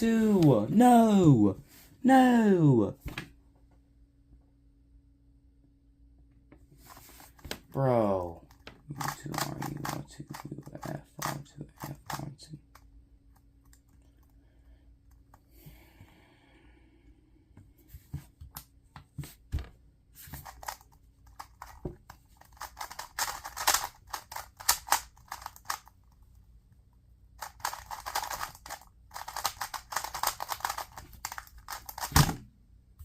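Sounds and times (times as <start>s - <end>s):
speed cube clicking: 9.0s - 12.9s, 20.4s - 25.9s, 27.4s - 32.2s.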